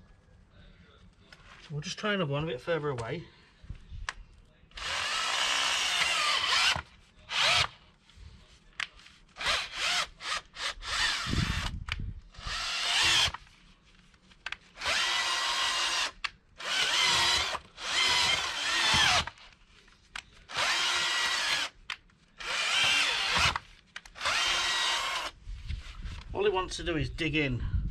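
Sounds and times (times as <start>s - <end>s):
cordless drill whining into clay: 4.7s - 7.8s, 9.4s - 13.4s, 14.8s - 19.5s, 20.5s - 21.8s, 22.4s - 25.4s.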